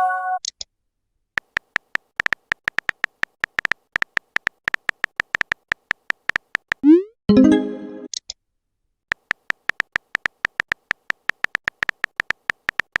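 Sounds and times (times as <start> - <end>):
phone keyboard typing clicks: 1.4 - 6.9, 9.1 - 13.0.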